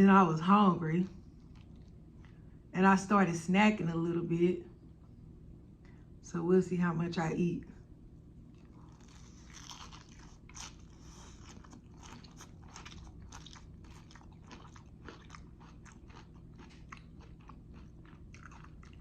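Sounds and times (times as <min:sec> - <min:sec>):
crunchy chewing: 0:01.4 - 0:02.5, 0:08.4 - 0:19.0.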